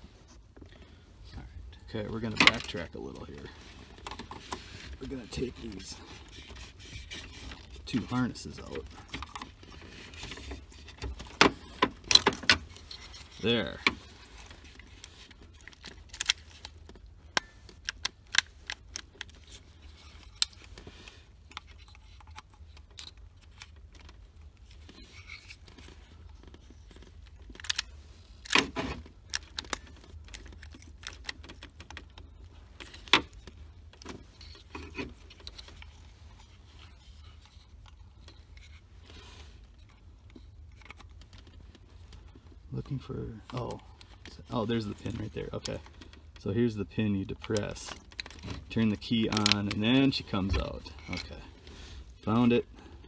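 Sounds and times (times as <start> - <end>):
clicks and rattles of hand work: 0.0 - 53.0
sharp plastic clacks: 3.8 - 36.2, 43.5 - 52.6.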